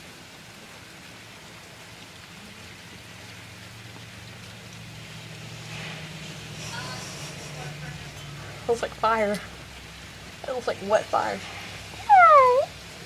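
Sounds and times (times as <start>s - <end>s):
rain hissing: 0.0s - 13.0s.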